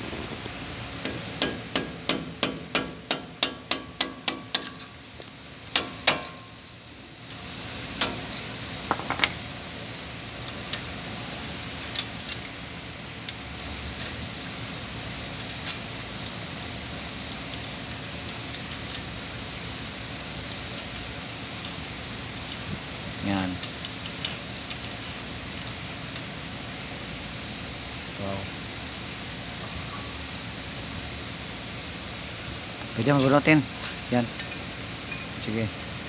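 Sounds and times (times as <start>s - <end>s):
hammer striking metal: 1.4s - 4.7s
light metallic clinks and taps: 34.3s - 35.9s.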